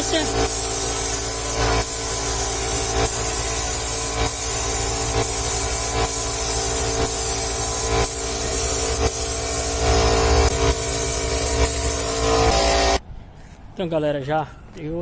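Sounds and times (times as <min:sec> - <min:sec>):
air compressor humming: 0:00.0 - 0:13.0
paint spray gun hissing: 0:00.0 - 0:13.0.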